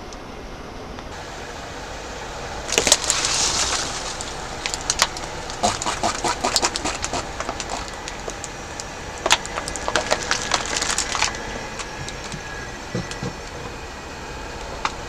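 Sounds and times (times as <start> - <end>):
hiss: 1.1 - 15.0
object crushed under car tyre: 9.2 - 13.5.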